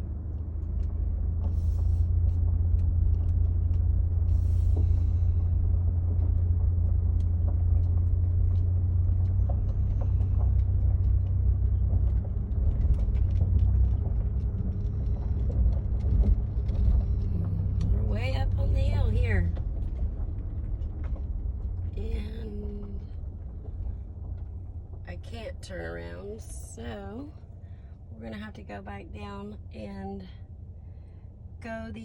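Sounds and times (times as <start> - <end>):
vehicle engine and tyre rumble: 0.0 - 32.0.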